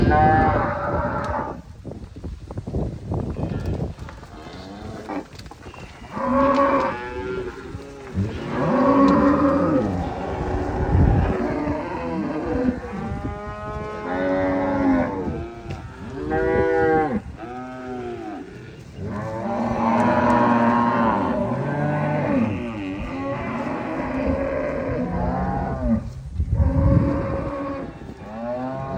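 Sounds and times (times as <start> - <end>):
cattle mooing: 6.0 - 26.0, 26.6 - 28.9.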